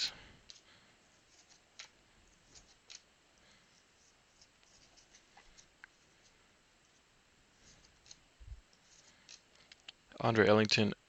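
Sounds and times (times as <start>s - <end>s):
trading cards ticking and rustling: 1.3s - 3.1s, 7.7s - 10.8s.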